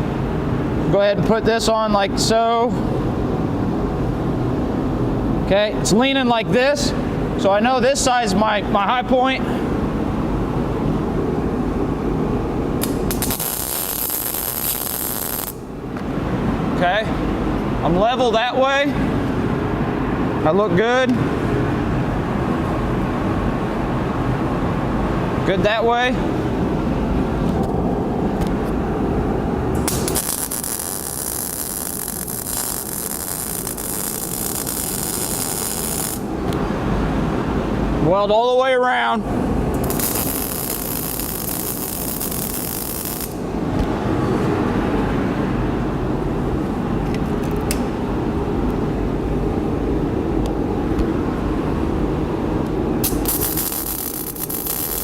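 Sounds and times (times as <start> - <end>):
loud even hiss: 12.8 - 15.6, 29.7 - 36.3, 39.8 - 43.4, 53.0 - 55.0.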